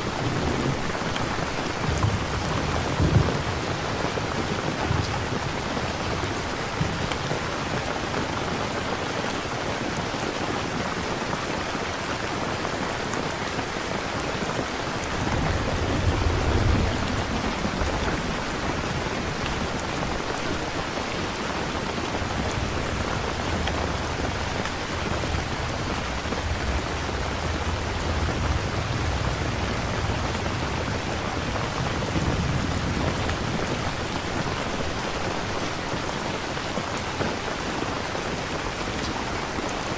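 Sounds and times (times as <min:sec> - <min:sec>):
thunder rumbling: 0:00.0 - 0:07.7, 0:14.6 - 0:36.0
steady rain: 0:00.0 - 0:39.9.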